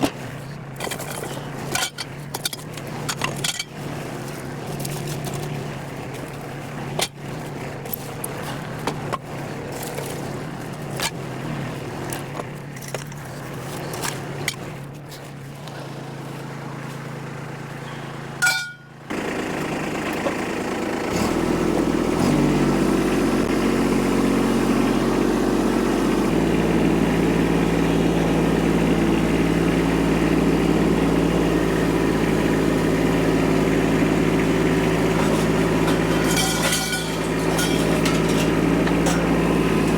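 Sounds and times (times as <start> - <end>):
vehicle engine running: 0.0 - 39.9
clinks and rattles: 18.4 - 19.0, 35.1 - 39.5
engine revving up: 19.1 - 39.9.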